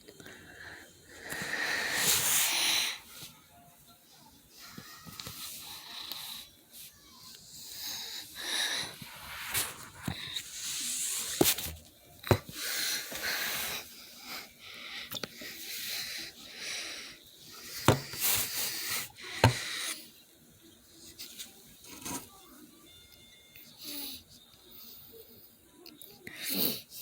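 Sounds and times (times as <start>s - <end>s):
rustling and handling noise: 0.0s - 14.6s, 17.4s - 19.7s.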